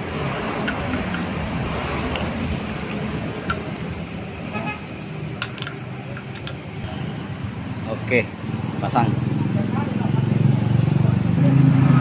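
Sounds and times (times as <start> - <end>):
road traffic noise: 0.0 - 12.0
vehicle horn toot: 4.5 - 4.9.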